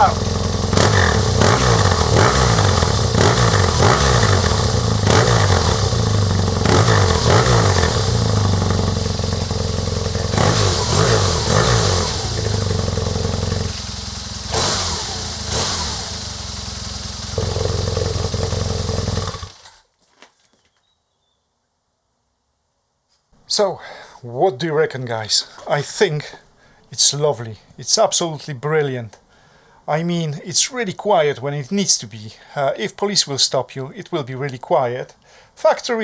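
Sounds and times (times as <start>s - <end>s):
motorcycle engine idling: 0.0s - 19.6s
motorcycle engine revving: 0.0s - 19.8s.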